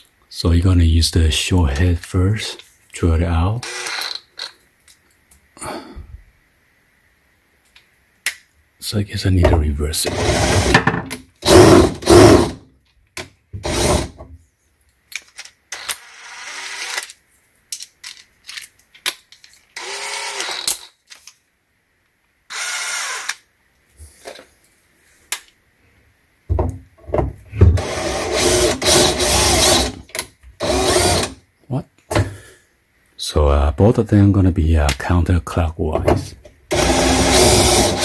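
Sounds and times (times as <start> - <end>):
power drill running: 10.0 - 12.6, 13.6 - 14.2, 19.8 - 20.7, 22.5 - 23.4, 27.8 - 30.0, 30.6 - 31.4, 36.7 - 38.0.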